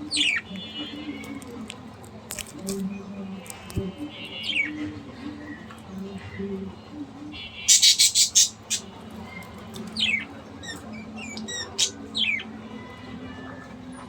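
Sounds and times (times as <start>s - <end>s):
harsh bird squawks: 7.4s - 8.9s.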